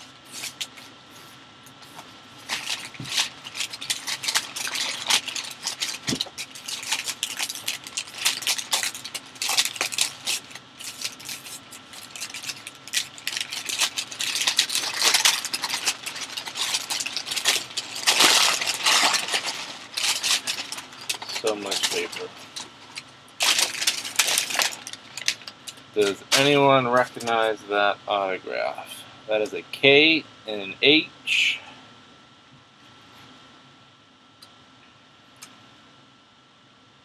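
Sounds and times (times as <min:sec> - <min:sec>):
packing paper crinkling: 0:00.0 - 0:01.0, 0:01.8 - 0:27.6.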